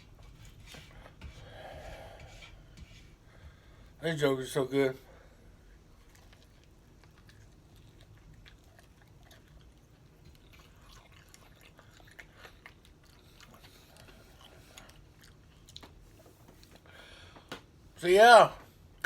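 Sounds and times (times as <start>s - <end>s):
chewing and crunching: 5.6s - 16.9s.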